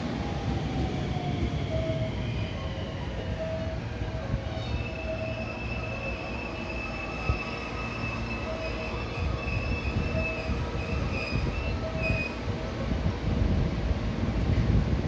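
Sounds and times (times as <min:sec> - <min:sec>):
electric train rumbling: 0:00.0 - 0:15.0
high-pitched wheel squeal: 0:04.5 - 0:12.4
lower wheel squeal: 0:04.5 - 0:12.4.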